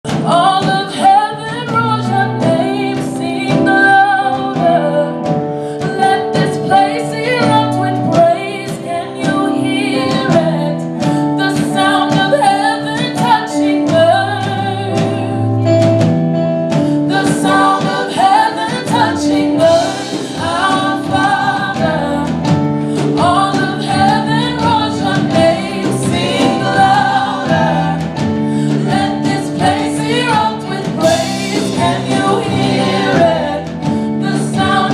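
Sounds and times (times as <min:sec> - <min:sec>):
gospel song with lead vocalist: 0:00.1 - 0:34.9.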